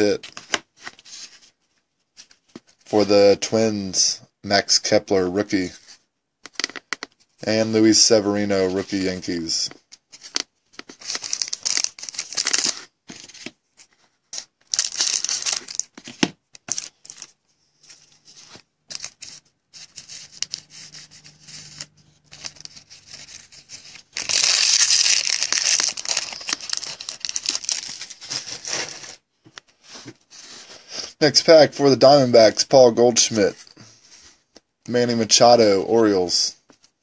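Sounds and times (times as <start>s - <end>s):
wrapper tearing and crinkling: 11.0s - 12.8s, 14.7s - 15.9s, 20.4s - 29.2s.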